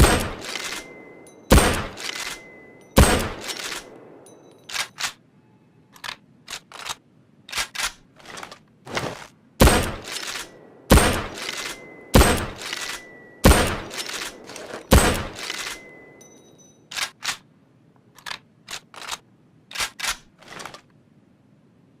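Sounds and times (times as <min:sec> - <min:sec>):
rifle shots with ringing echo: 0:00.0 - 0:05.0, 0:09.6 - 0:16.2
rifle bolt clicks: 0:00.0 - 0:05.2, 0:05.9 - 0:08.6, 0:09.6 - 0:15.9, 0:16.9 - 0:17.4, 0:18.0 - 0:20.8.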